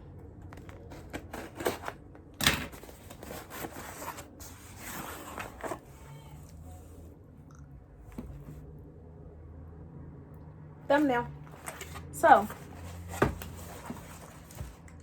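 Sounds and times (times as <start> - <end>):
packaging rustling: 11.6 - 14.9.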